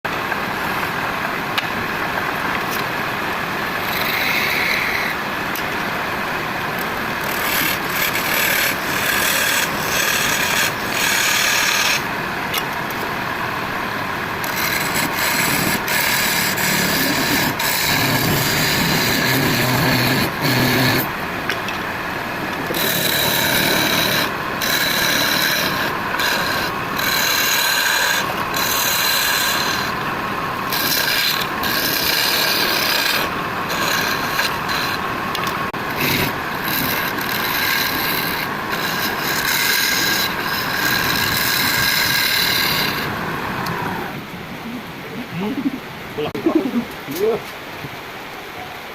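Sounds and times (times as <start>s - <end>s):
tool scraping spinning wood: 3.6s - 5.8s, 6.7s - 44.2s
wood lathe turning: 3.6s - 44.2s.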